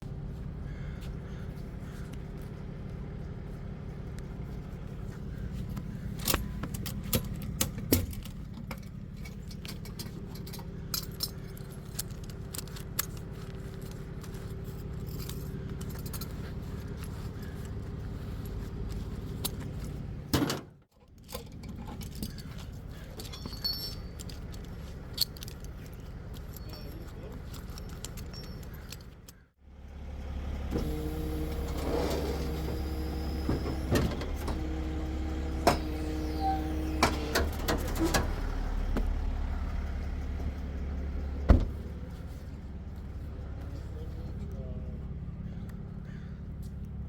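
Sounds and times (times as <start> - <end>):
vehicle engine running: 0.0 - 20.3, 21.2 - 47.0
metallic jingling and clicking: 6.2 - 20.0, 21.2 - 29.4.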